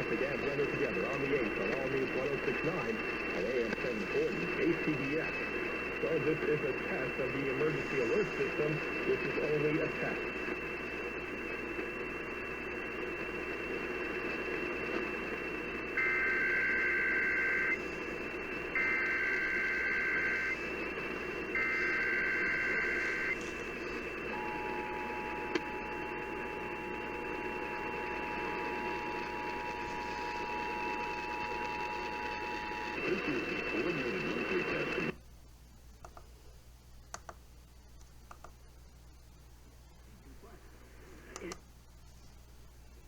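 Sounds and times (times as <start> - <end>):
buzzy data bursts: 0.0 - 35.1
radio hiss: 0.0 - 35.2, 39.4 - 43.0
click: 36.0 - 36.3, 37.1 - 37.4, 38.0 - 38.6, 41.3 - 41.6.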